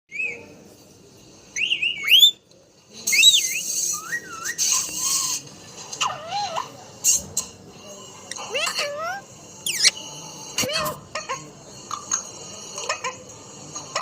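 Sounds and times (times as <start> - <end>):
parrot whistling: 9.6 - 10.0.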